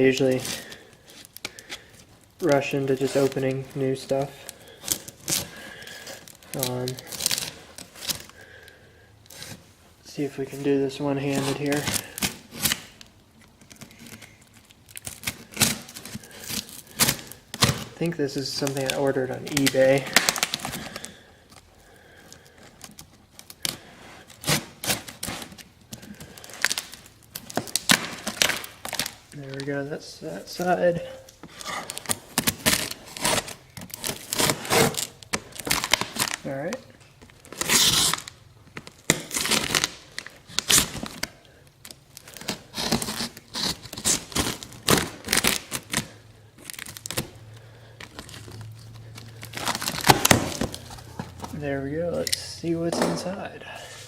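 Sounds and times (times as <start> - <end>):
package being torn open by hand: 11.3 - 21.2, 22.0 - 29.6, 31.3 - 51.5
blade cutting tape and cardboard: 32.6 - 35.1.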